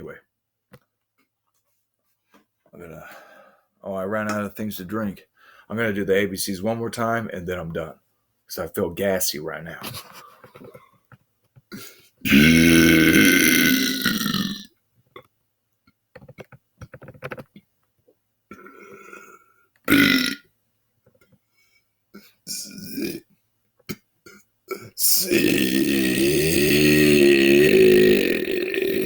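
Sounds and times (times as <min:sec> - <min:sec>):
man belching: 0:11.7 - 0:14.7, 0:18.5 - 0:20.4, 0:22.5 - 0:23.2, 0:23.9 - 0:29.0.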